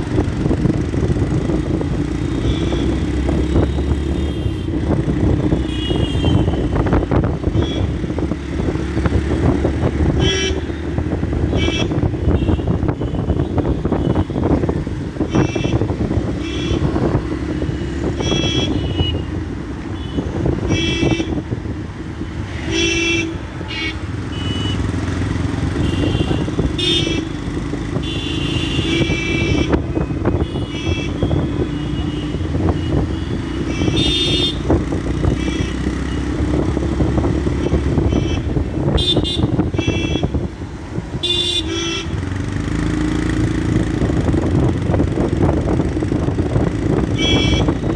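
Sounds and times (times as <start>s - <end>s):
motorcycle engine running: 0.0s - 47.9s
vehicle horn toots: 2.4s - 4.9s, 5.5s - 8.2s, 10.0s - 14.6s, 15.2s - 21.5s, 22.6s - 25.0s, 25.6s - 40.5s, 41.1s - 42.3s, 46.9s - 47.9s.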